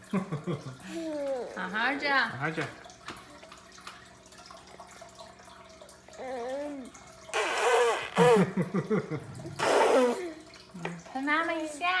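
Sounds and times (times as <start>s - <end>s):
baby cooing: 6.2s - 8.4s, 9.6s - 10.4s
baby blowing raspberries: 6.6s - 8.6s, 9.6s - 10.4s.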